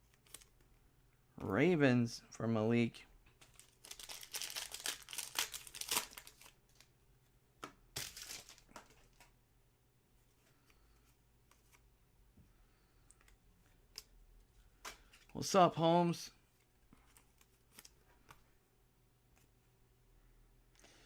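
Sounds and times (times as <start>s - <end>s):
wrapper tearing and crinkling: 3.5s - 6.8s, 8.0s - 8.7s.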